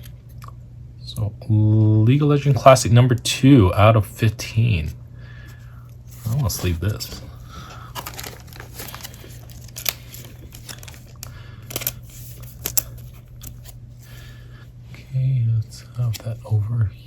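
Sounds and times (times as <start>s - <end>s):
plastic card sleeve crinkling: 6.0s - 14.4s.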